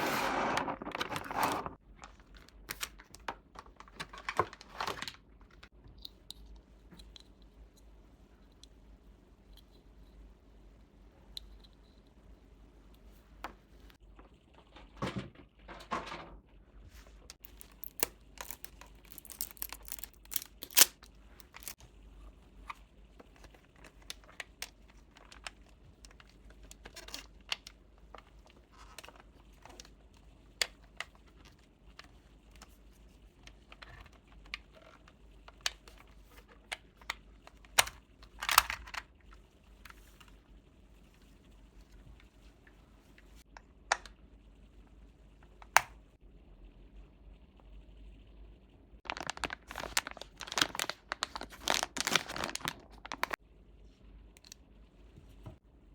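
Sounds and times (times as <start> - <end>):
paper and plastic tearing: 0.0 - 1.8, 17.4 - 21.8, 49.1 - 53.4.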